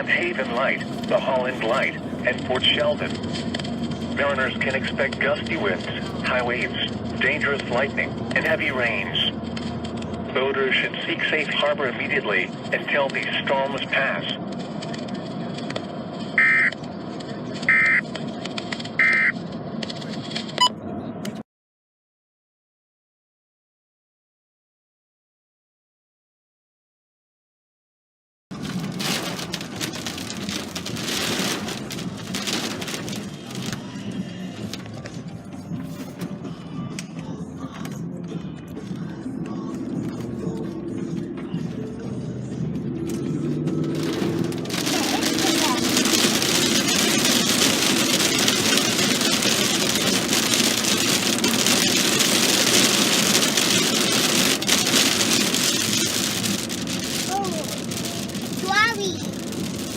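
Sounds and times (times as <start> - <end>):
rain pattering: 0.0 - 10.3, 28.5 - 35.2, 43.0 - 59.9.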